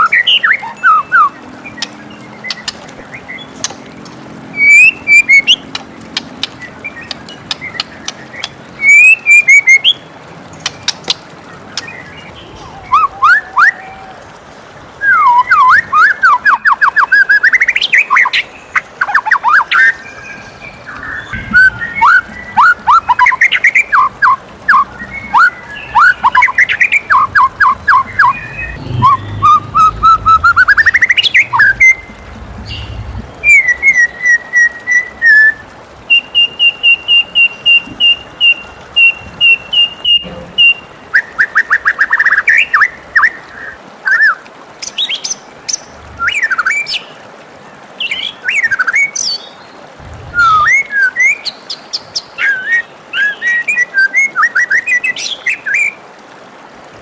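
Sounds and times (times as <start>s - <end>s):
bird singing whistled phrases: 0.0s - 3.5s, 4.5s - 5.6s, 6.8s - 10.0s, 11.8s - 14.2s, 15.0s - 18.4s, 20.9s - 43.4s, 50.3s - 51.6s.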